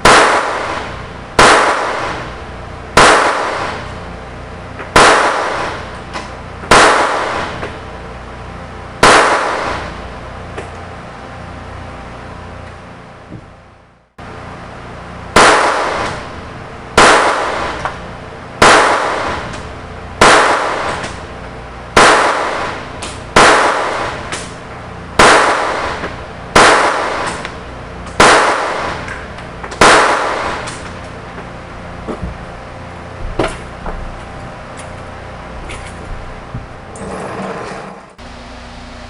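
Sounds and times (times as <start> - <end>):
pistol shots with echo: 0.0 - 2.4, 3.0 - 3.9, 4.9 - 6.0, 6.7 - 7.6, 9.0 - 10.0, 15.4 - 16.3, 17.0 - 17.9, 18.6 - 19.6, 20.2 - 21.2, 22.0 - 24.6, 25.2 - 27.6, 28.2 - 29.2, 29.8 - 30.9.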